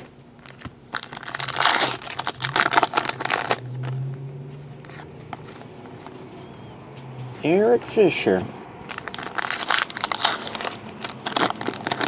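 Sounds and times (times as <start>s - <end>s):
wrapper crinkling and tearing: 0.4s - 4.0s, 8.9s - 12.0s.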